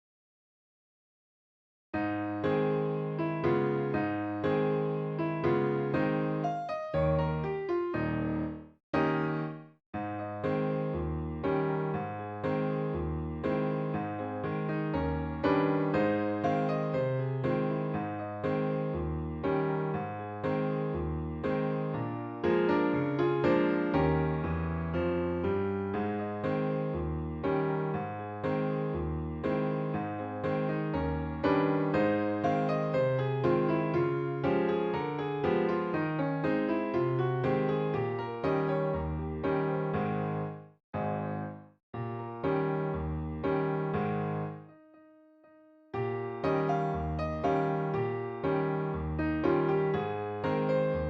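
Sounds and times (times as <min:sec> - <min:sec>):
electric piano chords: 0:02.0 - 0:51.0.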